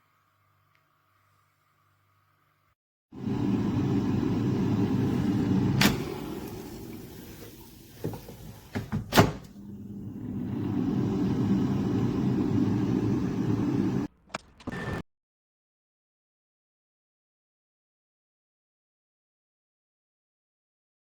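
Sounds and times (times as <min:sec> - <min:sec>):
air fryer fan humming: 0:03.2 - 0:14.1.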